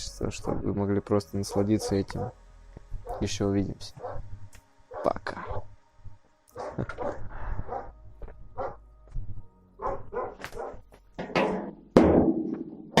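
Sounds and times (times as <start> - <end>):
music playing: 0.0 - 12.0
dog barking: 1.4 - 2.4, 3.0 - 3.4, 4.0 - 4.3, 4.9 - 5.7, 6.5 - 8.0, 8.6 - 8.8, 9.8 - 10.8.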